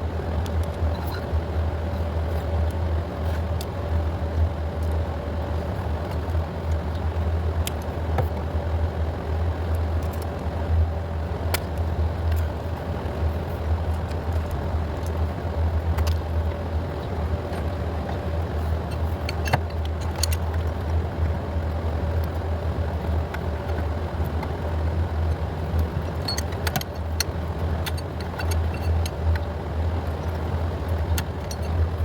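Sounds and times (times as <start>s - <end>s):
steady low rumble: 0.0s - 32.0s
metallic clicks of hand tools: 26.0s - 29.5s.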